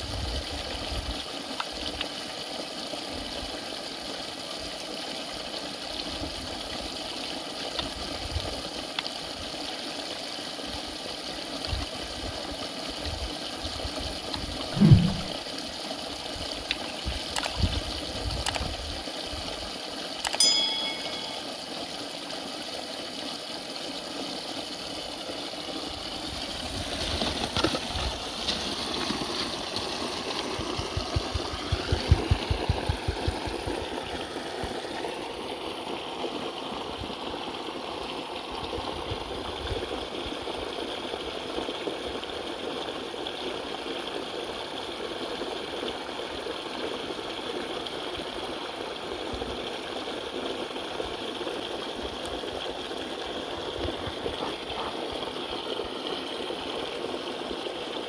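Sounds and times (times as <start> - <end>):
flowing water rushing: 0.0 - 58.0
low thud: 14.8 - 15.4
metallic clink: 20.3 - 21.5.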